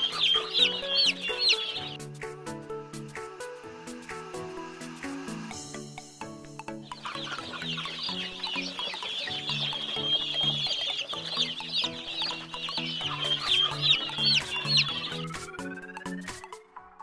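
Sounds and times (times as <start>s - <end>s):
chicks peeping: 0.0s - 2.0s, 6.8s - 15.9s.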